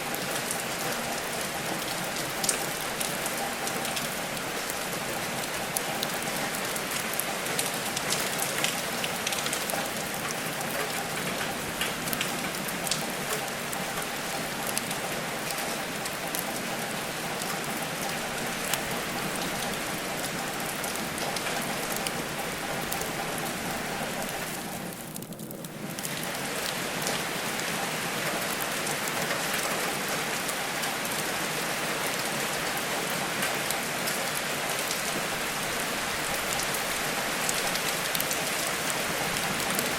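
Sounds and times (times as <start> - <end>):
steady rain falling: 0.0 - 39.9
raindrops ticking: 0.1 - 27.2.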